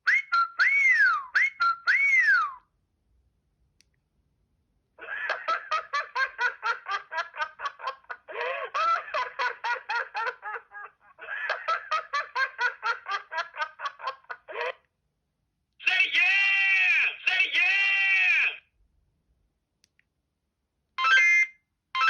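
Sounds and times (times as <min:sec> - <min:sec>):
mobile phone ringtone: 0:21.0 - 0:22.0.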